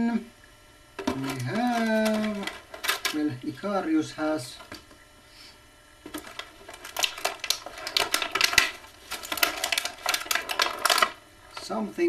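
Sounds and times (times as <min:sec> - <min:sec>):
plastic packaging crinkling: 0:01.0 - 0:03.3, 0:06.1 - 0:11.8.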